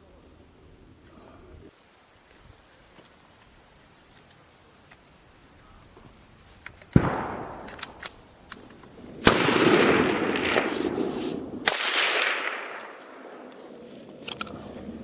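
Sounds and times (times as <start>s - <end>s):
rifle shots: 6.9s - 8.2s, 9.2s - 13.5s
rolling echo: 8.6s - 15.0s.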